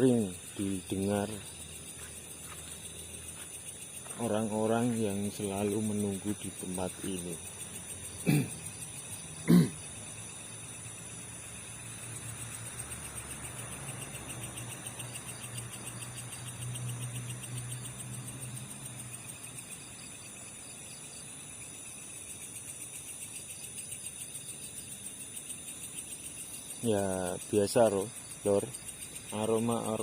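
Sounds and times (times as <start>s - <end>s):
crickets chirring: 0.0s - 30.0s.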